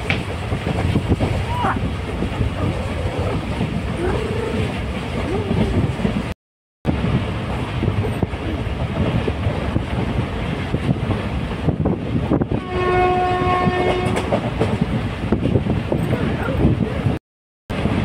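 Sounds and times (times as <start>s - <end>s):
train rumbling and clattering: 0.0s - 18.0s
train horn blast: 12.5s - 14.4s.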